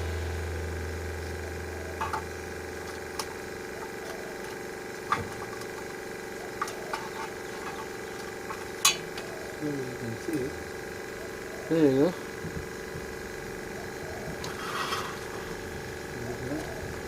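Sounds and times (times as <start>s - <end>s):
low rumble: 0.0s - 3.6s
steady hum: 0.0s - 17.0s.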